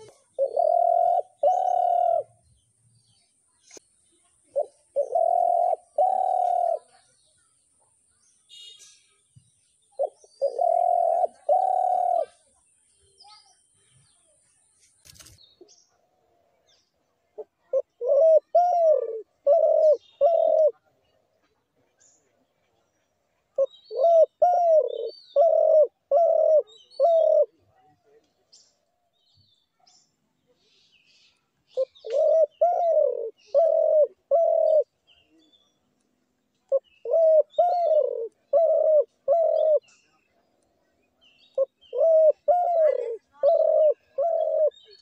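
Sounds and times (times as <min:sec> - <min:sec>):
dove cooing: 0:00.0 - 0:02.4, 0:04.4 - 0:07.0, 0:10.0 - 0:12.4, 0:17.4 - 0:20.8, 0:23.6 - 0:27.6, 0:31.7 - 0:34.9, 0:36.7 - 0:39.9, 0:41.6 - 0:45.0.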